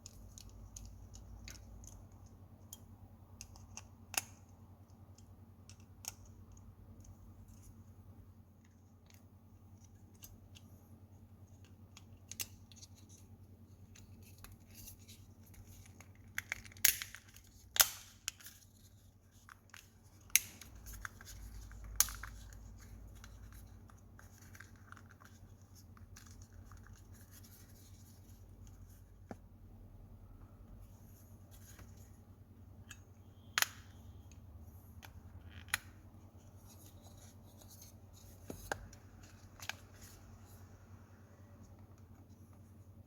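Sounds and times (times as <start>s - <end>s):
plastic parts clicking and snapping: 0.0s - 7.7s, 11.5s - 25.4s, 32.8s - 34.4s, 35.0s - 40.2s
faint low hum: 0.0s - 43.0s.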